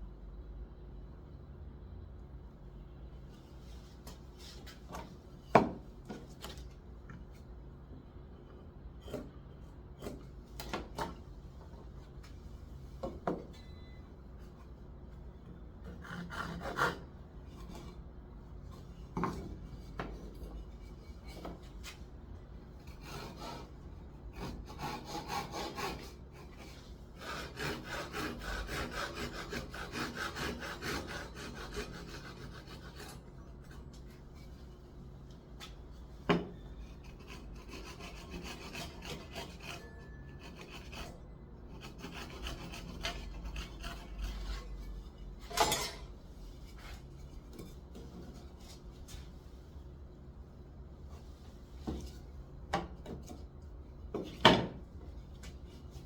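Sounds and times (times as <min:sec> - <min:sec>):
hand tool rasping on wood: 0:24.4 - 0:26.1, 0:27.2 - 0:33.2, 0:37.0 - 0:39.8, 0:41.8 - 0:44.6.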